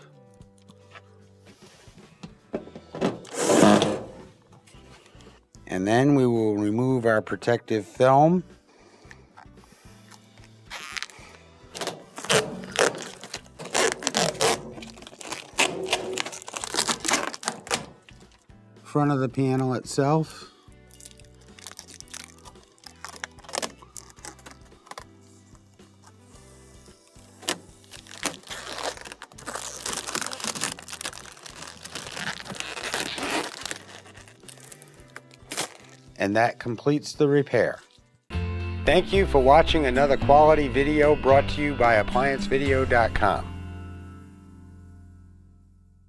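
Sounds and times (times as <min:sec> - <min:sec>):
plastic film being peeled off: 0:03.2 - 0:04.1, 0:10.7 - 0:18.2, 0:20.9 - 0:25.1, 0:27.2 - 0:36.1.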